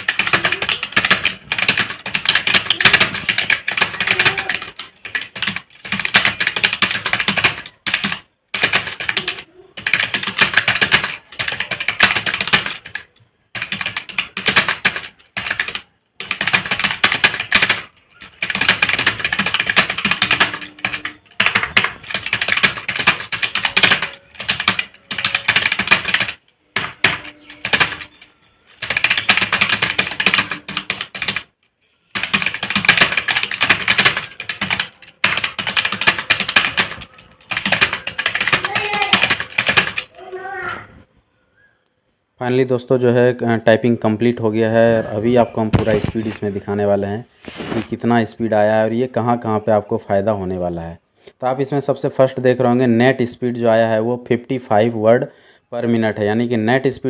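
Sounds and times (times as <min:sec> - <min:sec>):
fast typing on keyboard: 0:00.0 - 0:31.5, 0:32.1 - 0:40.1.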